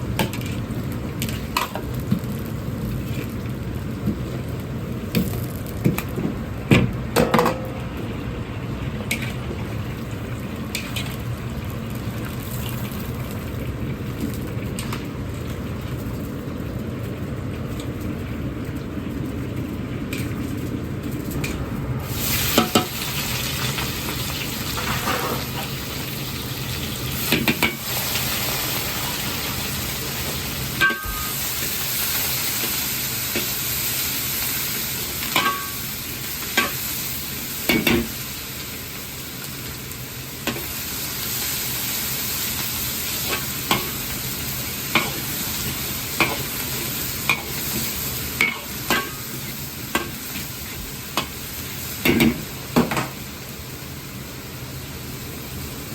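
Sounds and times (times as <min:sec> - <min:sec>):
food sizzling in hot oil: 0:00.0 - 0:55.9
gas burner roaring: 0:00.0 - 0:55.9.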